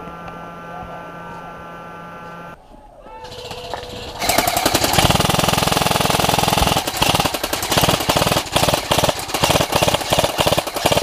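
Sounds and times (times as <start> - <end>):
airsoft rifles firing: 3.2 - 11.0.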